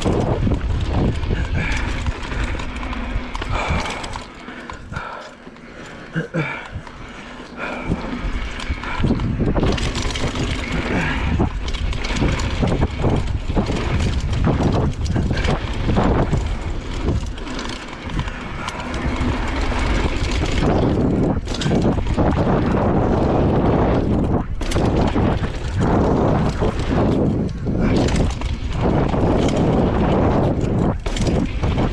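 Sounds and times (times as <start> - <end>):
bike clattering and rattling: 0.0 - 31.9
bike tyre rumble: 0.0 - 31.9
wind buffeting microphone: 0.0 - 31.9.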